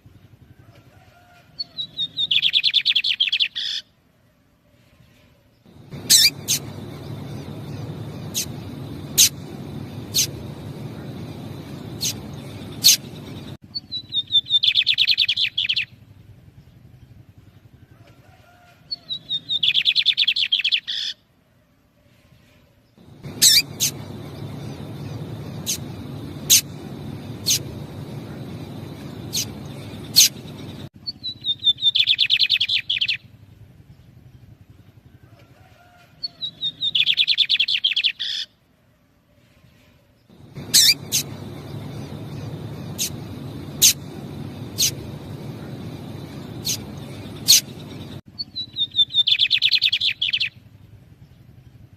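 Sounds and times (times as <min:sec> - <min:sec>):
low background noise: 0:03.8 - 0:14.1, 0:21.2 - 0:31.5, 0:38.5 - 0:48.8
birds singing trilled song: 0:05.6 - 0:15.9, 0:18.9 - 0:21.2, 0:23.0 - 0:33.2, 0:36.2 - 0:38.5, 0:40.2 - 0:50.6
sharp bird call notes: 0:05.8 - 0:13.5, 0:23.1 - 0:30.8, 0:40.4 - 0:48.2.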